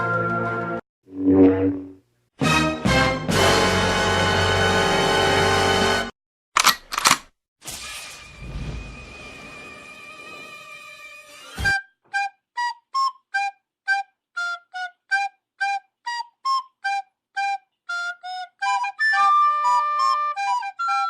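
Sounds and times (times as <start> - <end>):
flute-like wind instrument melody: 11.7 - 21.0.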